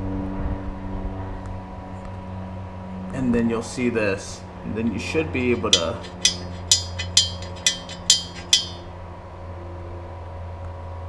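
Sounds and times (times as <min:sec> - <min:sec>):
light metallic clinks: 0:05.6 - 0:08.8.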